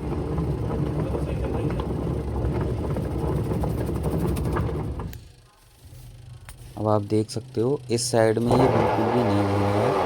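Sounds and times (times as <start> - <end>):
washing machine motor humming and rattling: 0.0 - 5.5, 6.1 - 10.0.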